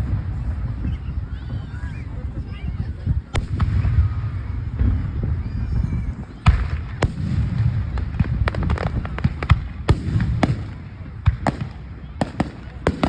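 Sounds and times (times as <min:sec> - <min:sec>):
fireworks booming and banging: 0:02.8 - 0:13.0
fireworks crackling pops: 0:03.2 - 0:13.0.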